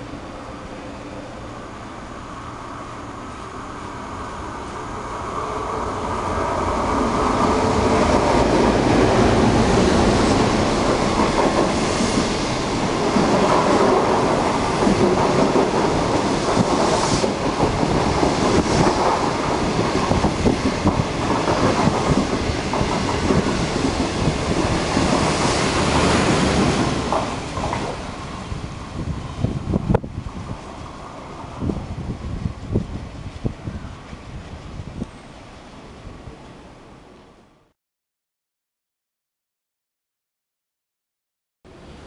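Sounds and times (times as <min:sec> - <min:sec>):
passenger train passing: 0:00.0 - 0:37.7, 0:41.7 - 0:42.0
wheels clattering over rail joints: 0:10.3 - 0:28.4.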